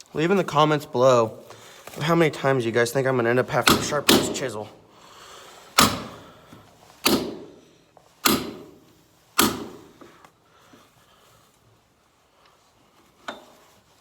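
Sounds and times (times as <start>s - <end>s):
hammer striking a chisel: 3.6s - 4.6s, 5.8s - 6.3s, 7.0s - 10.1s.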